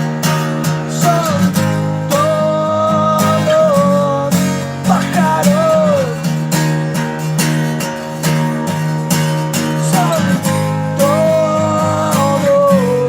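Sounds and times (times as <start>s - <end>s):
acoustic guitar strumming: 0.0s - 13.0s
bending melody line: 0.0s - 13.0s.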